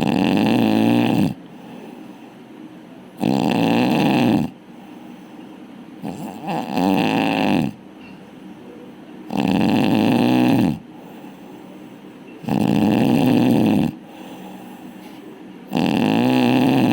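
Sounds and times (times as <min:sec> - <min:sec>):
person snoring loudly: 0:00.0 - 0:01.4, 0:03.2 - 0:04.6, 0:06.0 - 0:07.8, 0:09.3 - 0:10.8, 0:12.4 - 0:14.0, 0:15.7 - 0:16.9
soft breathing: 0:01.4 - 0:02.5, 0:04.7 - 0:05.6, 0:10.9 - 0:12.3, 0:13.9 - 0:15.6.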